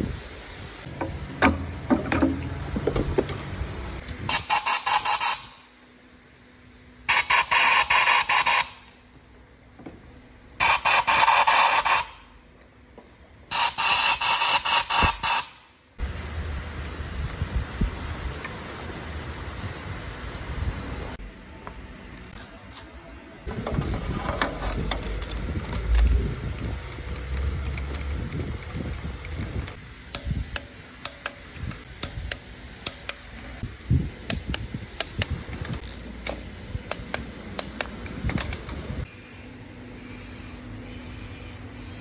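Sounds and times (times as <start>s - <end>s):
metallic clicks of hand tools: 24.8s - 33.6s, 34.3s - 38.8s.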